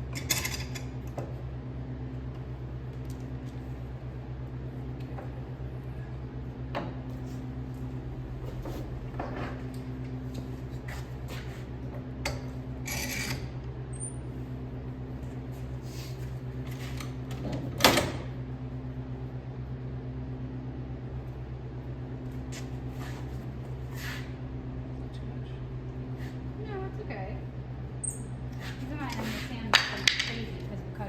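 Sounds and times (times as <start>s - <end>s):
low machine hum: 0.0s - 31.0s.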